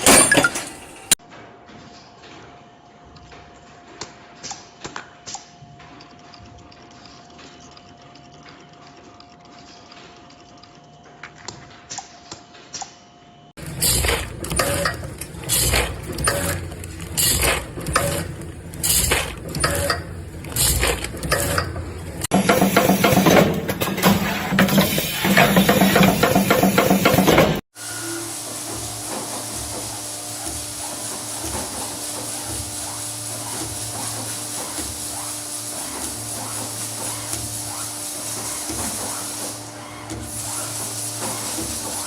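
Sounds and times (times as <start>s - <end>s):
dense loud machine clatter: 13.6s - 27.6s, 28.2s - 42.0s
loud mechanical strokes: 13.6s - 42.0s.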